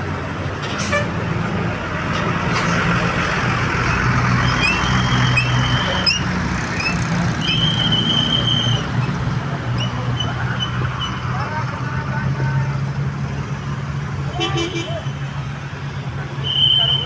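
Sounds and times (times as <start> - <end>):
high held squeals: 4.4 - 11.2.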